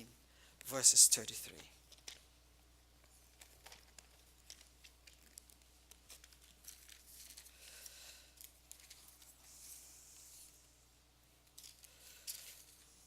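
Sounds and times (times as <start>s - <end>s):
pages being turned: 3.2s - 7.5s, 8.4s - 10.5s.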